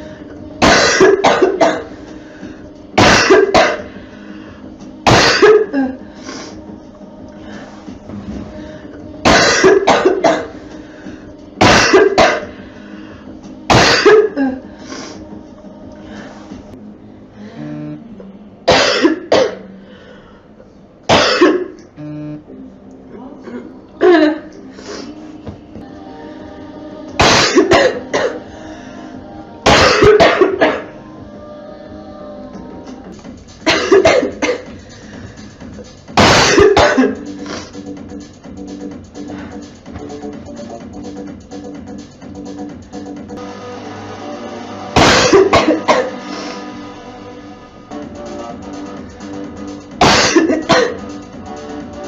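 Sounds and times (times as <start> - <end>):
girl coughing: 0.6 - 2.0, 3.0 - 3.9, 5.0 - 6.0, 9.2 - 10.6, 11.6 - 12.6, 13.7 - 14.6, 18.7 - 19.7, 21.1 - 21.8, 23.4 - 24.6, 27.2 - 28.4, 29.7 - 30.9, 33.6 - 34.7, 36.2 - 37.2, 45.0 - 46.2, 50.0 - 51.0.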